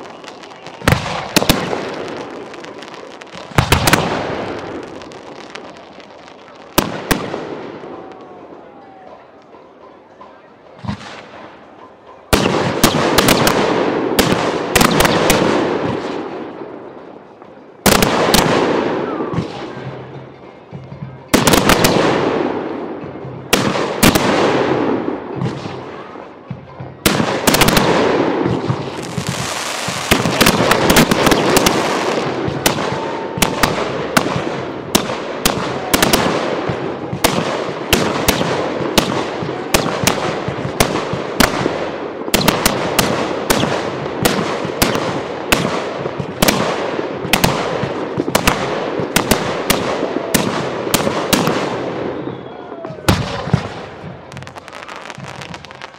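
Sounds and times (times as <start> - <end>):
fireworks bursts: 0.0 - 8.8, 12.3 - 16.6, 17.8 - 20.1, 21.2 - 55.9
fireworks crackling: 0.0 - 9.6, 27.0 - 55.9.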